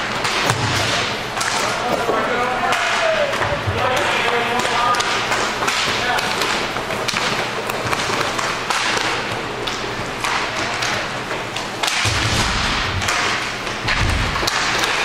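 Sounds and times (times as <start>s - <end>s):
skates and sticks clattering: 0.0s - 15.0s.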